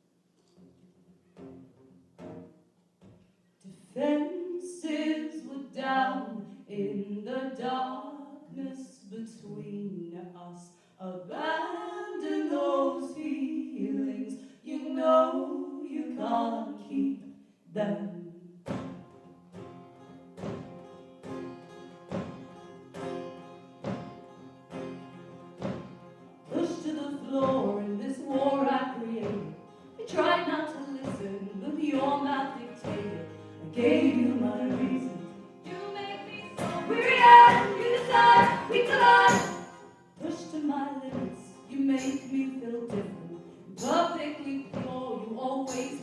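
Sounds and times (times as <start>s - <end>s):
women singing in harmony: 3.7s - 18.3s, 26.5s - 46.0s
acoustic guitar chords strummed: 18.6s - 26.8s, 28.4s - 40.5s.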